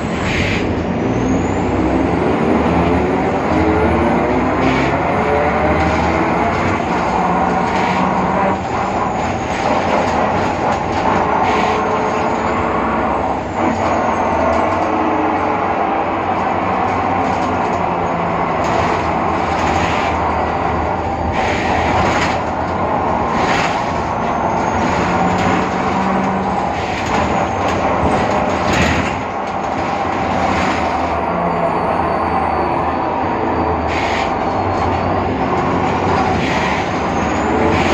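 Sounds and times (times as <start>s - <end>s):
bus differential whine: 0.0s - 37.9s
diesel engine drone: 0.0s - 37.9s
rattles and knocks: 16.4s - 20.3s, 21.9s - 31.1s.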